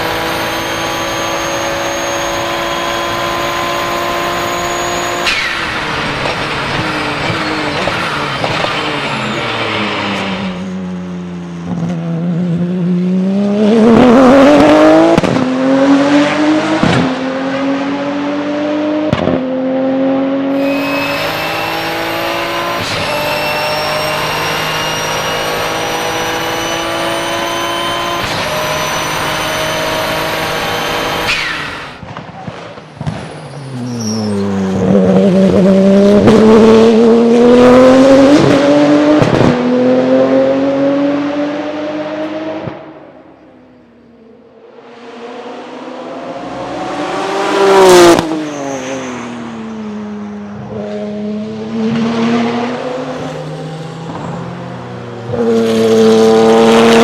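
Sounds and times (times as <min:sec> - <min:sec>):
race car engine revving: 0:00.0 - 0:32.0, 0:33.5 - 0:48.6, 0:49.2 - 0:57.0
turbo whistle: 0:20.5 - 0:32.0.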